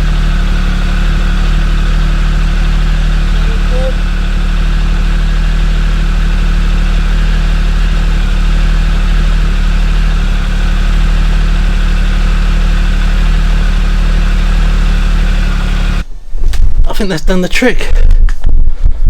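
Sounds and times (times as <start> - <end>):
motorcycle engine idling: 0.0 - 16.1.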